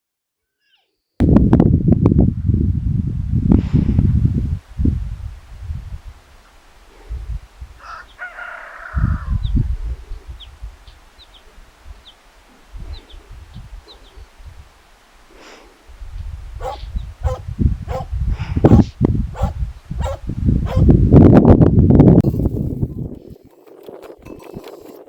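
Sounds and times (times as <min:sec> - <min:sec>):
wind buffeting microphone: 0:01.2 - 0:14.8, 0:15.9 - 0:25.0
livestock calling: 0:16.6 - 0:18.1.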